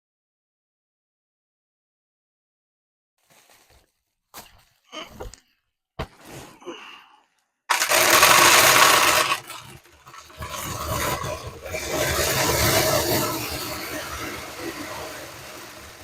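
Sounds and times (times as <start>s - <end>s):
corn kernels pouring rattle: 7.7s - 16.0s.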